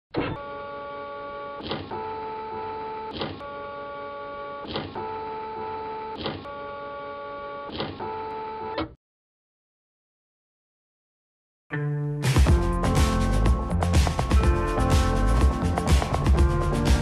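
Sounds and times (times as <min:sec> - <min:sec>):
printer motor whine: 0:00.2 - 0:08.9.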